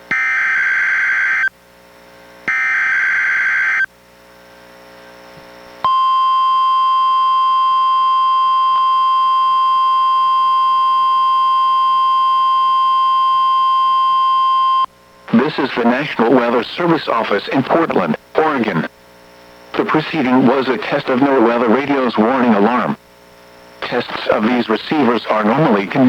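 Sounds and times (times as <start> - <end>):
steady warning alarm tone: 0.1 - 1.5, 2.5 - 3.9, 5.8 - 18.9.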